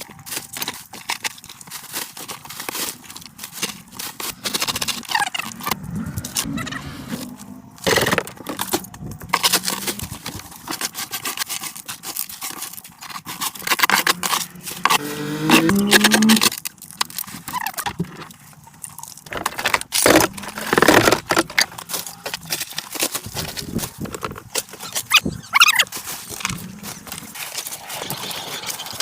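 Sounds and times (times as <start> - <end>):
debris scraping and clattering: 0.0 - 29.0
rising squeal: 27.6 - 29.0.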